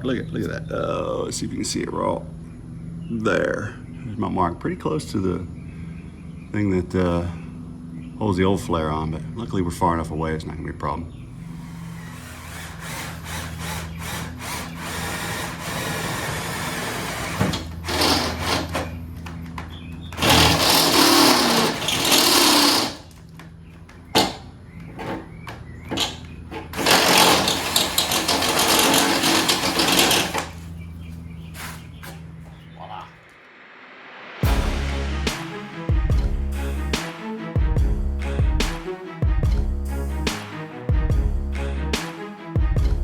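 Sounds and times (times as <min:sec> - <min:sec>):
power drill drilling sheet metal: 0:11.4 - 0:19.4, 0:20.0 - 0:23.1, 0:26.0 - 0:30.6.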